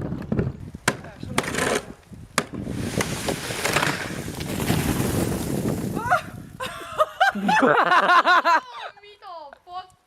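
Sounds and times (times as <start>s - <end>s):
person laughing: 6.0s - 8.9s.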